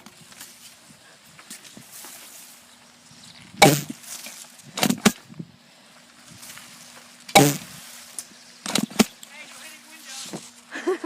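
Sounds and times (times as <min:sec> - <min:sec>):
airsoft gun shots: 0:03.6 - 0:04.0, 0:04.8 - 0:05.2, 0:07.3 - 0:07.7, 0:08.6 - 0:09.2.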